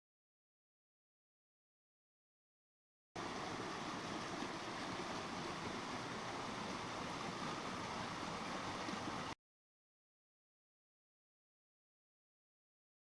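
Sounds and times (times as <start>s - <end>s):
creek flowing: 3.2s - 9.4s.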